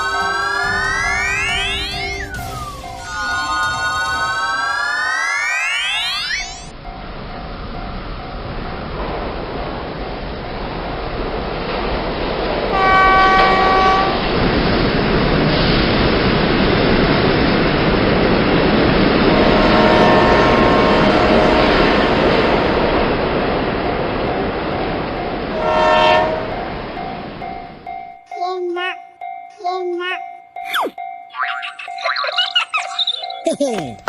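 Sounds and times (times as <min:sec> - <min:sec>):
train rumbling: 0:00.0 - 0:30.2
train horn blasts: 0:12.7 - 0:14.4, 0:19.3 - 0:22.8, 0:25.5 - 0:26.8.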